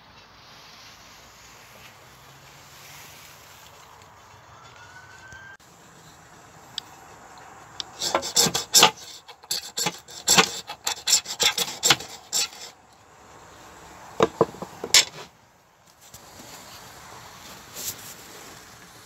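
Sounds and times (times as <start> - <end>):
rasping scrapes on wood: 7.8 - 12.8.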